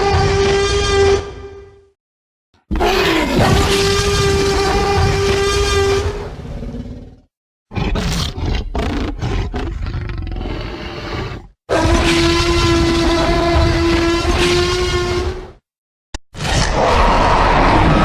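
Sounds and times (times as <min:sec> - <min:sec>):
dinosaur roar: 0:16.4 - 0:18.0.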